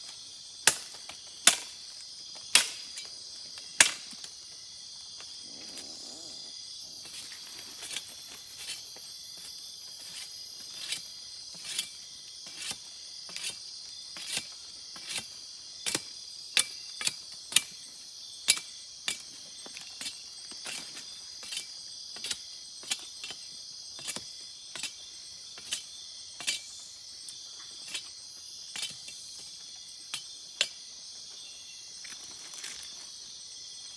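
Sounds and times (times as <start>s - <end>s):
night insects buzzing: 0.0s - 33.9s
machete chopping branch: 0.6s - 3.2s, 3.8s - 4.3s.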